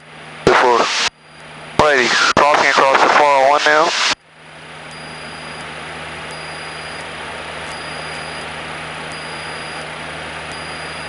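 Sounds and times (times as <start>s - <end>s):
thin electrical tone: 4.9s - 5.6s, 6.3s - 7.1s, 7.7s - 8.5s, 9.1s - 9.8s, 10.5s - 11.0s.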